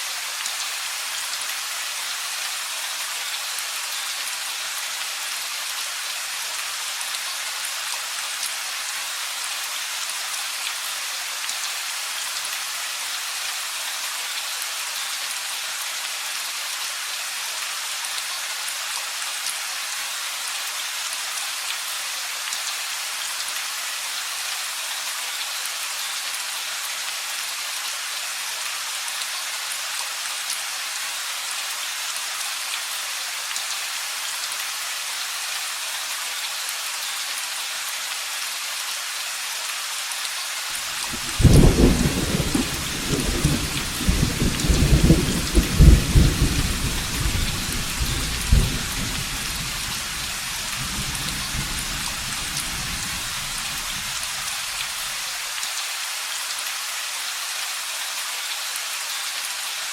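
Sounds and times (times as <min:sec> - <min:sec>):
heavy rain falling: 0:39.9 - 0:57.1.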